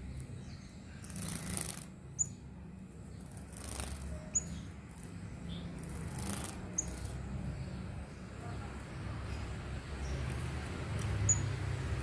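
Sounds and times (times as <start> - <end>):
high bird chirps: 0.2 - 2.5, 3.1 - 7.8, 9.3 - 11.7
bird wings fluttering: 1.1 - 1.9, 3.4 - 4.1, 5.8 - 7.0.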